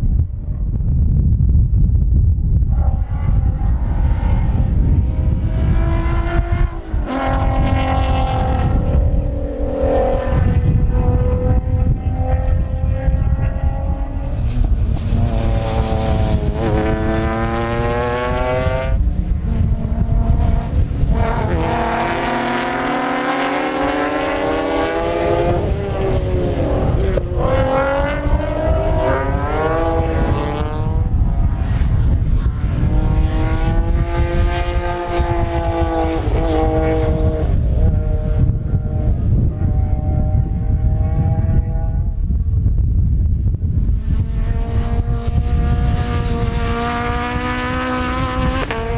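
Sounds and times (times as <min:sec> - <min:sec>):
wind rumble on microphone: 0:00.0 - 0:48.9
rally car engines accelerating: 0:02.7 - 0:42.1, 0:44.1 - 0:48.9.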